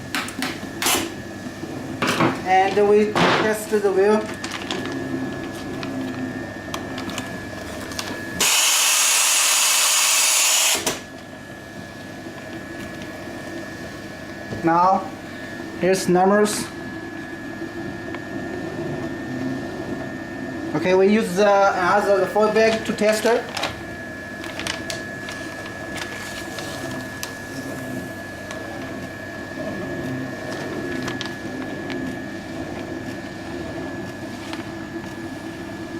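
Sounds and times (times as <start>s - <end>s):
band sealer motor hum: 0.0s - 35.9s
machine high whine: 0.0s - 35.9s
compressed air hissing: 8.4s - 10.8s.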